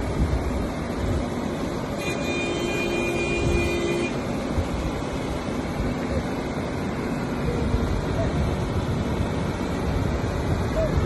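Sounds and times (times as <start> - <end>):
excavator engine running: 0.0 - 11.0.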